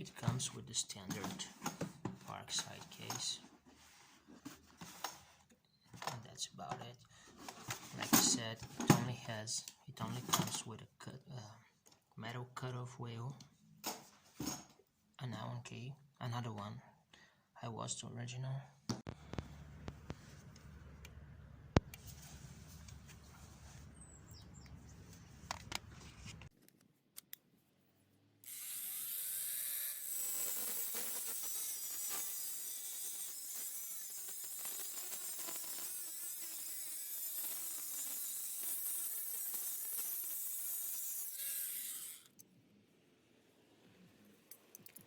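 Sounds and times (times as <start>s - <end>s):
angle grinder cutting: 28.4s - 42.4s.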